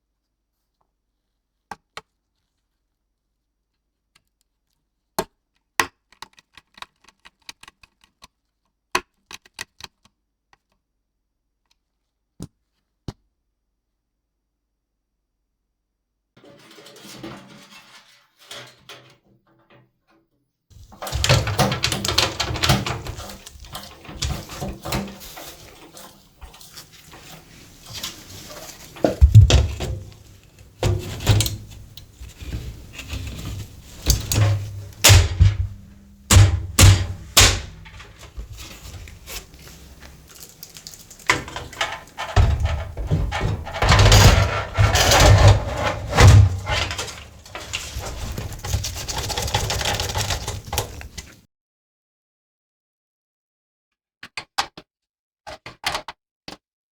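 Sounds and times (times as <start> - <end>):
heavy thumps: 20.8 - 51.4.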